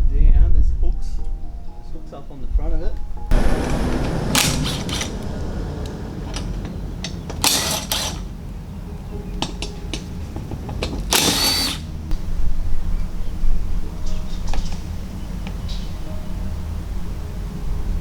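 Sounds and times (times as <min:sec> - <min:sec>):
cordless power tool running: 0:03.3 - 0:08.3, 0:09.4 - 0:11.9
metal clicks: 0:03.3 - 0:08.4, 0:09.4 - 0:12.1.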